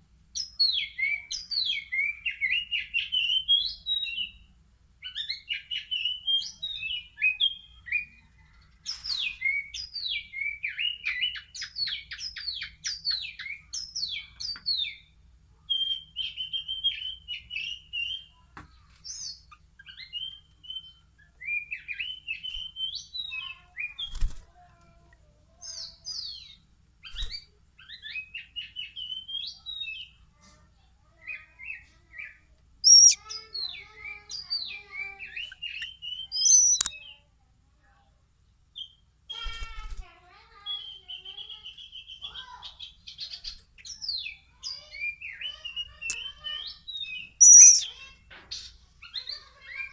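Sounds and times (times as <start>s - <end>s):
bird chicks chirping: 0.0s - 15.2s, 15.8s - 24.8s, 25.6s - 30.3s, 31.1s - 37.3s, 38.8s - 49.9s.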